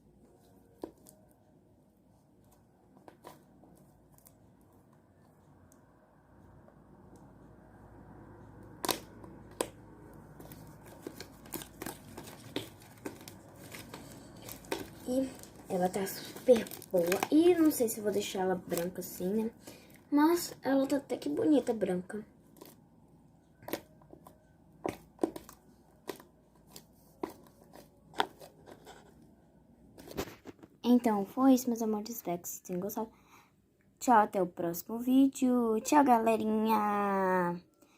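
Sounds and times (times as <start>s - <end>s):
slime crackling: 8.7s - 21.9s.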